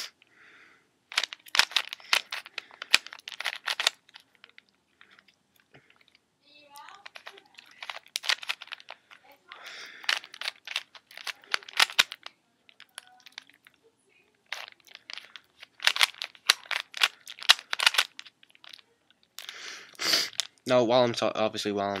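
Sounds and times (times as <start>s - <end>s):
puzzle cube clicking: 1.1s - 4.6s, 6.8s - 13.8s, 14.4s - 19.6s.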